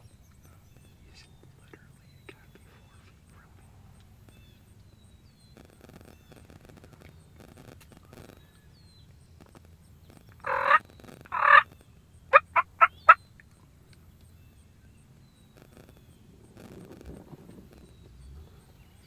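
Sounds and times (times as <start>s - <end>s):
turkey gobbling: 10.4s - 11.7s, 12.3s - 13.2s.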